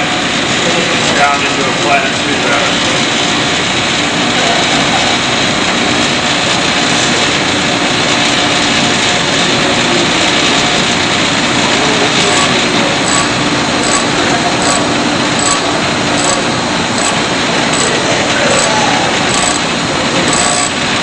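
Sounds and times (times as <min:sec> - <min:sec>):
grinder grinding steel: 0:12.2 - 0:21.0
faint short high beeps: 0:20.3 - 0:20.8.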